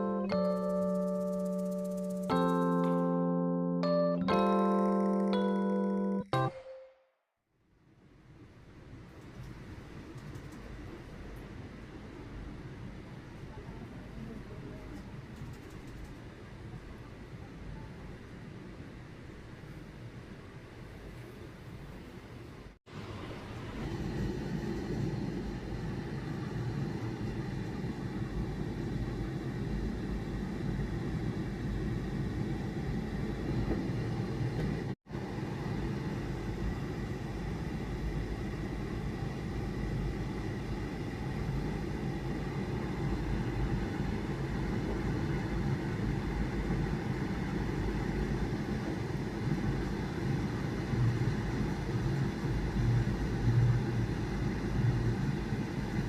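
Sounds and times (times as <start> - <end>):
low rumbling background noise: 7.7 - 56.0.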